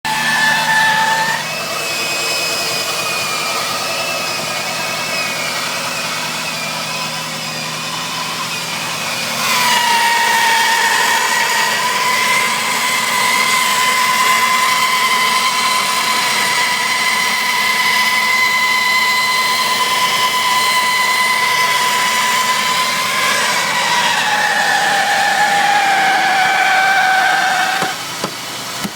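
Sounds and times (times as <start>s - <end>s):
high-pitched screech: 0.1s - 1.6s, 18.2s - 28.1s.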